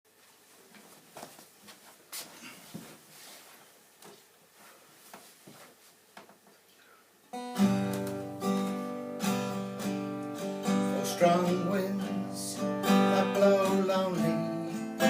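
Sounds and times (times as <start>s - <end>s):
acoustic guitar strumming chords: 7.3s - 15.0s.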